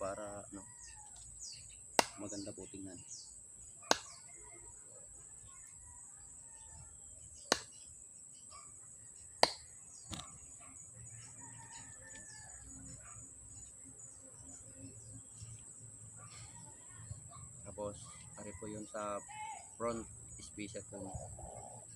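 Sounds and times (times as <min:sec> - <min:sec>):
birds chirping: 0:00.0 - 0:21.9.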